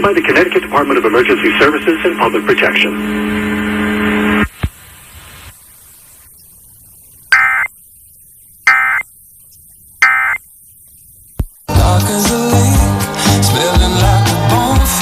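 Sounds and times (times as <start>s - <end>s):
buzzy digital data bursts: 7.3s - 7.7s, 8.7s - 9.0s, 10.0s - 10.4s.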